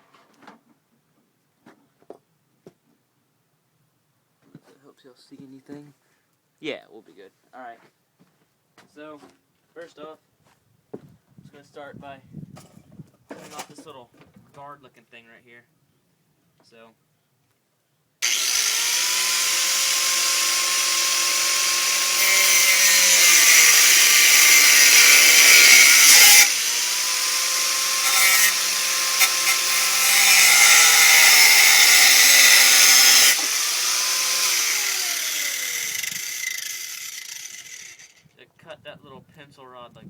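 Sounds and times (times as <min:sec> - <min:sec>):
grinding disc on metal: 0:18.2 - 0:38.1
angle grinder motor whine: 0:18.2 - 0:38.2.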